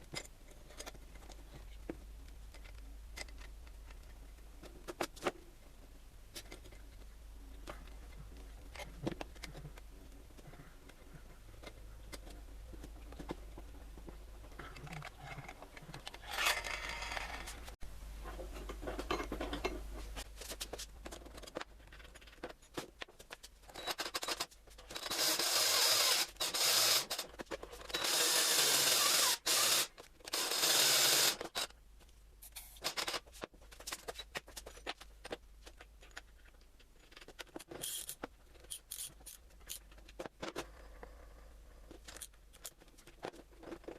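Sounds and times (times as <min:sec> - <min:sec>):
loud rasping bursts: 0:25.0 - 0:27.2, 0:28.0 - 0:31.7.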